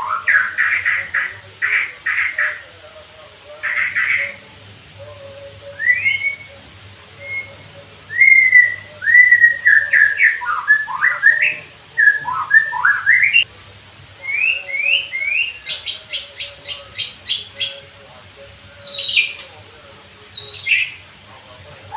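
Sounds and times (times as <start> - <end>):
songbird whistling: 0.0 - 2.6, 3.6 - 4.4, 5.4 - 13.5, 14.2 - 17.8, 18.8 - 19.5, 20.3 - 21.0.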